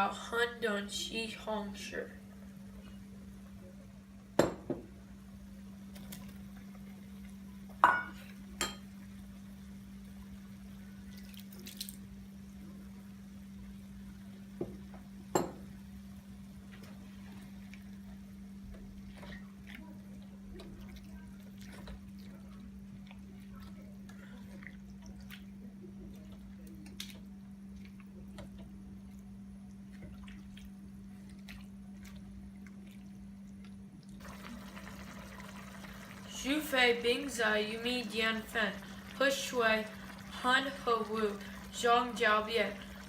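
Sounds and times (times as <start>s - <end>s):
steady low hum: 12.1s - 43.0s.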